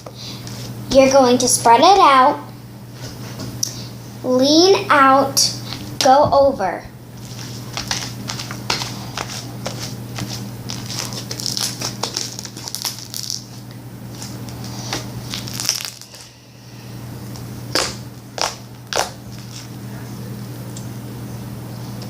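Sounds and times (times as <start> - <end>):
low hum: 5.2 - 22.0.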